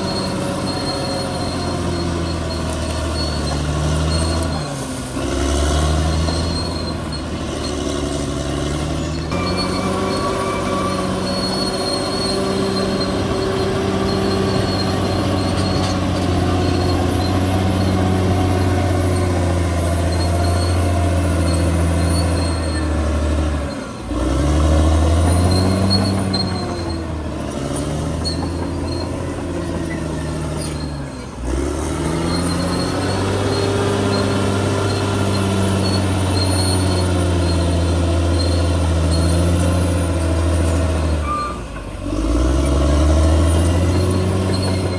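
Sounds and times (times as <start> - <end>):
bulldozer diesel engine running: 0.0 - 44.9
thin high machine whine: 9.1 - 22.8.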